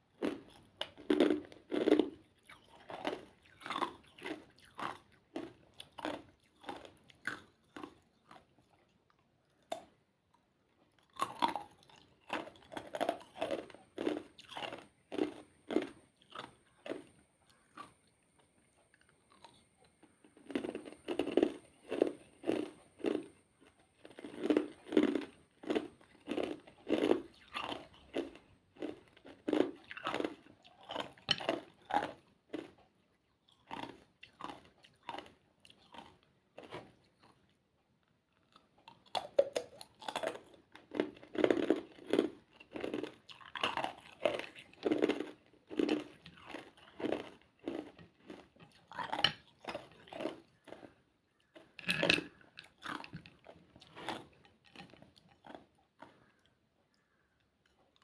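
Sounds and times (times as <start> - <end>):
person crunching ice: 40.0 - 51.0.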